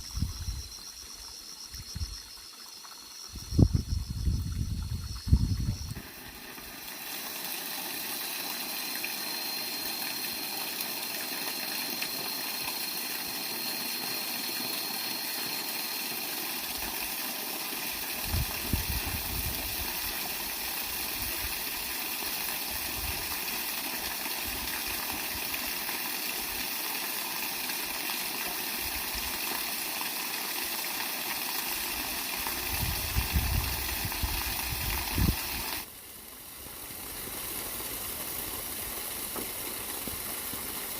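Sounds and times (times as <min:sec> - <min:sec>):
water splashing into pond: 0:00.0 - 0:40.9.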